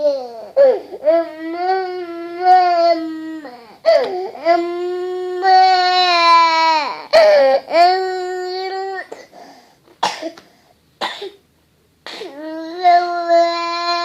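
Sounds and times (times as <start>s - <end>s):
child coughing: 10.0s - 10.4s, 11.0s - 11.4s, 12.1s - 12.4s.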